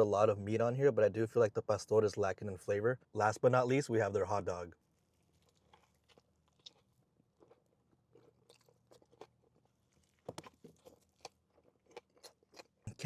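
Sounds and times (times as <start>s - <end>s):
person chewing and crunching: 5.0s - 13.0s.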